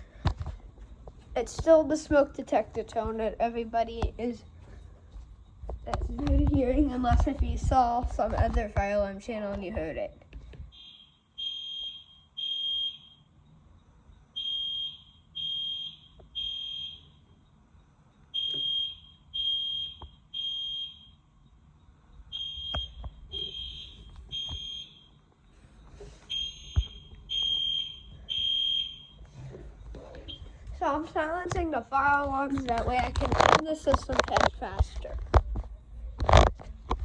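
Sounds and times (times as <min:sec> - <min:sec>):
fire alarm horn beeping: 0:10.7 - 0:13.6, 0:14.2 - 0:17.4, 0:18.1 - 0:21.4, 0:22.1 - 0:29.5, 0:30.1 - 0:30.7.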